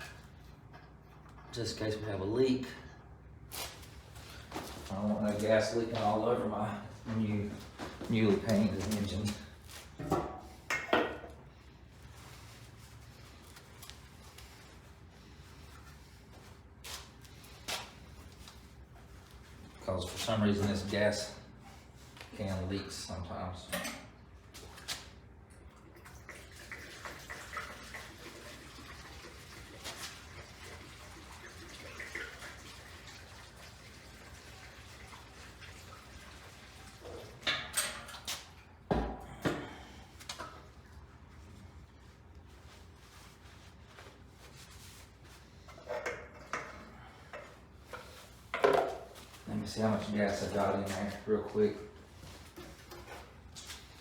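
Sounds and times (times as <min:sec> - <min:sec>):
light room hum: 0:00.0 - 0:54.0
gasoline pouring through a funnel: 0:25.5 - 0:37.4.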